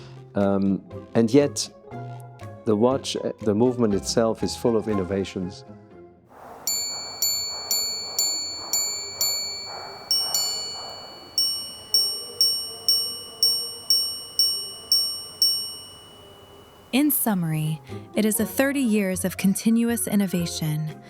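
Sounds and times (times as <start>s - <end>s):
watch chiming on gongs: 6.4s - 17.8s.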